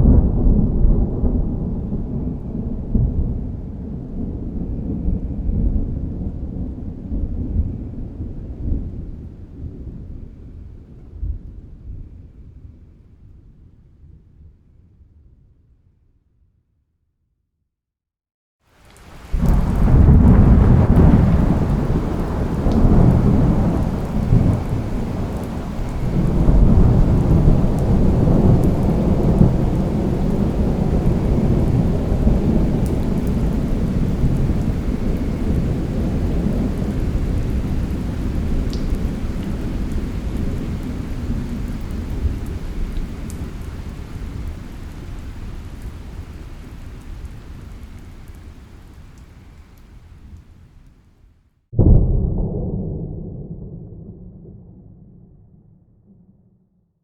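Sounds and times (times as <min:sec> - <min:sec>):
thunderclap and rumbling thunder: 0:00.0 - 0:12.9, 0:19.0 - 0:46.3, 0:51.8 - 0:56.4
rain falling: 0:18.7 - 0:51.3.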